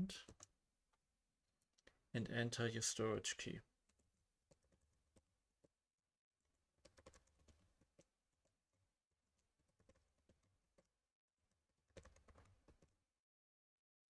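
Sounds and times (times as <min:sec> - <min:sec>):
faint keyboard typing: 0:00.1 - 0:00.6, 0:03.8 - 0:05.8, 0:06.4 - 0:13.1.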